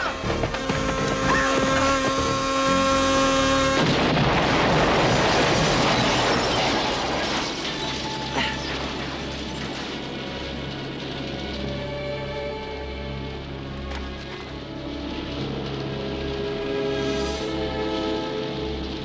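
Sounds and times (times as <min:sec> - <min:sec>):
droning tone: 0:00.0 - 0:04.0
large explosion: 0:03.4 - 0:11.2.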